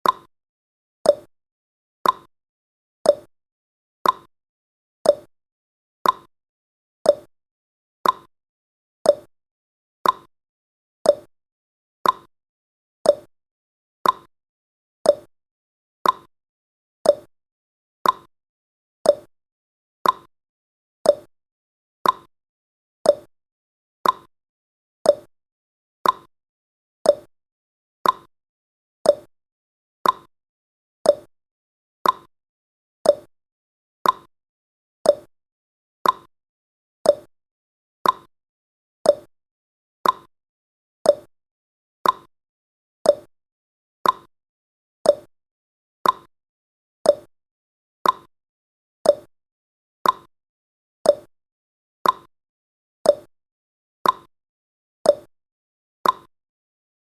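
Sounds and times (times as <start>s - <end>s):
clock ticking: 40.0s - 40.3s, 44.0s - 44.3s, 46.0s - 46.3s, 56.0s - 56.3s.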